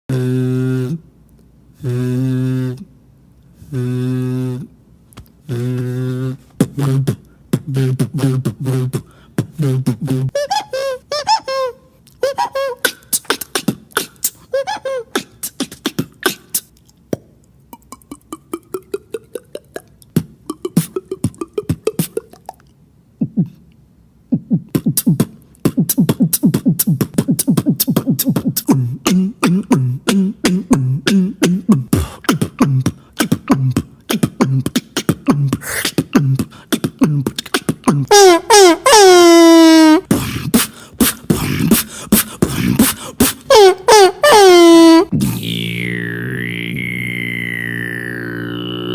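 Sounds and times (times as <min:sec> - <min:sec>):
beatboxing vocal percussion: 0:01.8 - 0:02.9, 0:05.4 - 0:10.6, 0:12.1 - 0:23.6, 0:24.3 - 0:38.5, 0:40.0 - 0:44.3, 0:45.0 - 0:48.9
mouth clicks and snaps: 0:12.0 - 0:12.2, 0:12.8 - 0:14.4, 0:15.2 - 0:23.8, 0:24.6 - 0:38.1, 0:40.1 - 0:43.5
pulsing bass line: 0:45.1 - 0:48.9.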